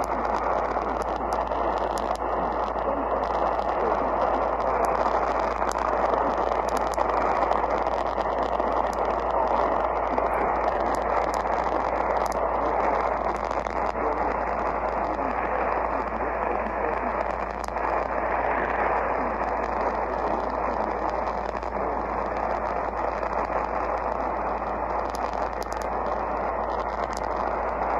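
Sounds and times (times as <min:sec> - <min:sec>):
faint crackles: 0:00.0 - 0:27.9
low hum: 0:00.0 - 0:27.9
radio static hiss: 0:00.0 - 0:27.9.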